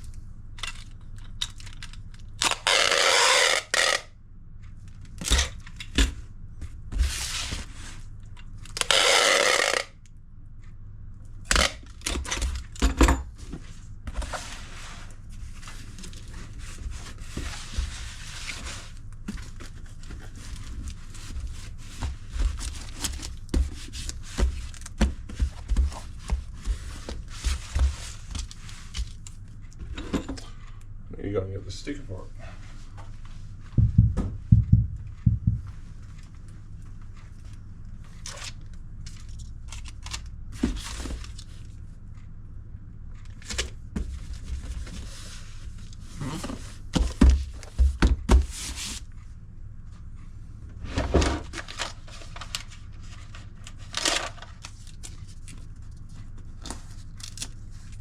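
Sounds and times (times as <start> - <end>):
tape tearing rasps: 2.4 - 4.1, 8.7 - 10.0.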